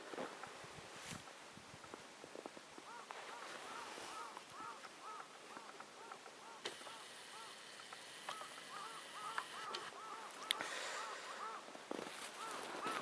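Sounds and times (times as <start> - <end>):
light hiss: 0.0 - 11.4
waterfowl honking: 2.9 - 11.7, 12.3 - 13.0.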